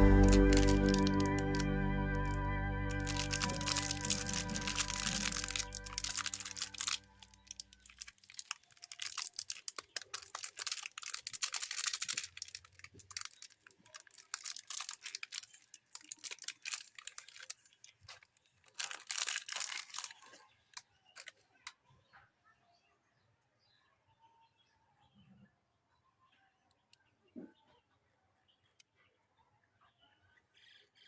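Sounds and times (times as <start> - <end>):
candy wrappers crinkling and tearing: 0.0 - 21.4.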